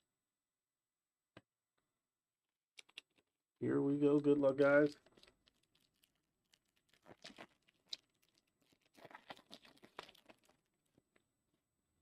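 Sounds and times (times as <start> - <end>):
packaging crinkling and tearing: 4.6 - 10.7.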